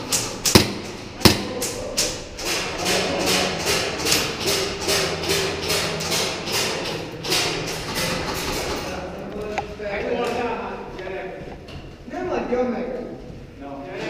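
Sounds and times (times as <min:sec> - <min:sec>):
sharp knocks: 0:00.0 - 0:01.8, 0:02.4 - 0:08.8.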